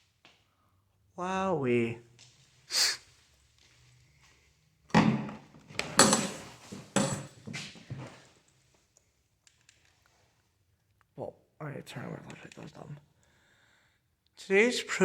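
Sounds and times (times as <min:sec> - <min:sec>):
hard objects knocking and clattering: 0:04.9 - 0:08.0.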